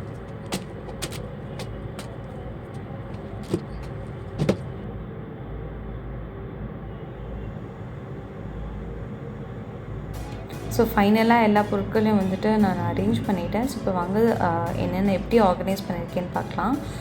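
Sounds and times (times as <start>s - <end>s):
steady low hum: 0.0s - 17.0s
plastic containers clicking and knocking: 3.1s - 4.7s.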